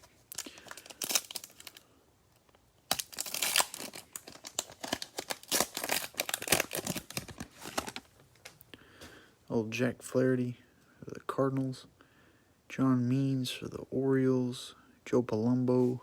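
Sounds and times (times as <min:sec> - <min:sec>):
cellophane wrapper tearing and crinkling: 0:00.0 - 0:01.9, 0:02.8 - 0:08.5.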